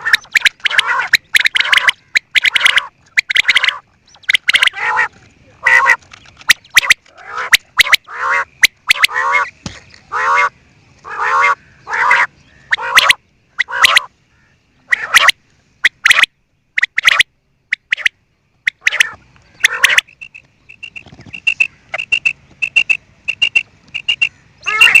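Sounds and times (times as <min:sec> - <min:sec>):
quail harsh buzzy calls: 0:00.0 - 0:25.0
sharp clicks: 0:00.2 - 0:04.7, 0:18.7 - 0:24.3.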